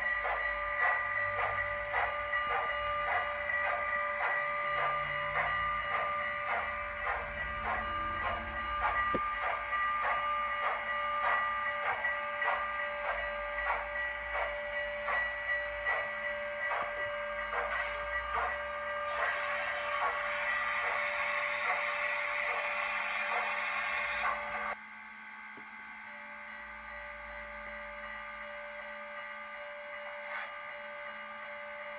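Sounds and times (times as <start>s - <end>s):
steam hissing: 0.0s - 24.8s
steam locomotive chuffing: 0.0s - 24.8s.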